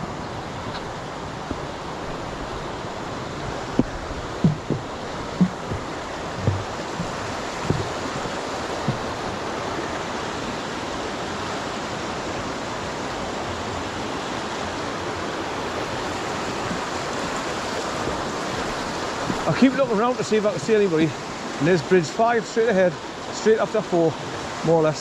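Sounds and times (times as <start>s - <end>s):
stream rapids rushing: 0.0s - 25.0s
low thumps: 0.6s - 9.5s.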